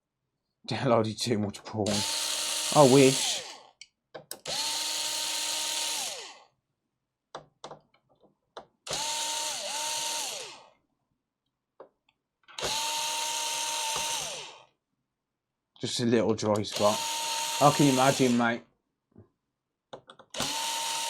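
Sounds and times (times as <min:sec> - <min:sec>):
electric screwdriver whining: 0:01.9 - 0:03.8, 0:04.4 - 0:06.5, 0:08.9 - 0:10.7, 0:12.5 - 0:14.7, 0:16.6 - 0:18.5, 0:20.3 - 0:21.0.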